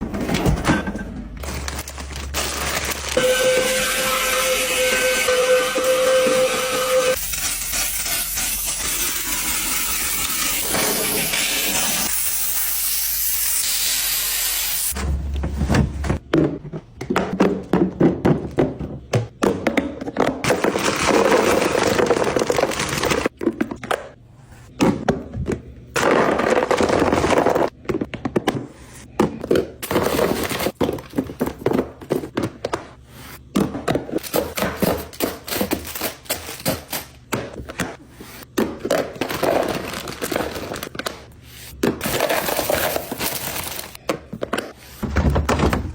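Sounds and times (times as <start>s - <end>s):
food packaging being handled: 1.4s - 3.2s, 34.2s - 45.0s.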